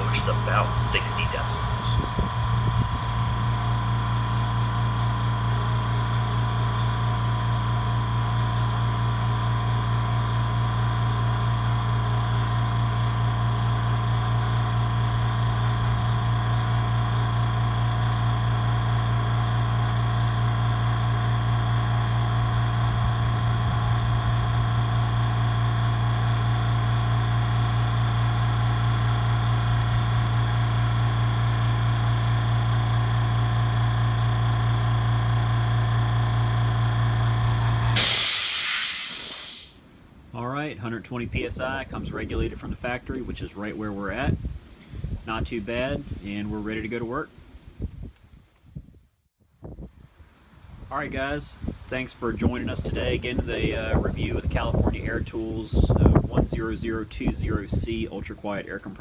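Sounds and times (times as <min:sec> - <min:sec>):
air compressor running: 0:00.0 - 0:39.9.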